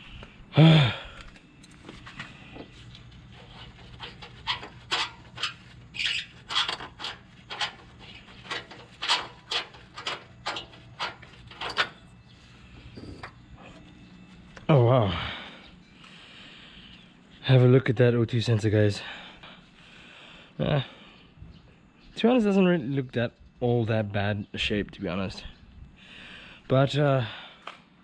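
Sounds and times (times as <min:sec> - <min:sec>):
wrench squeaking and scraping: 0:03.3 - 0:13.8.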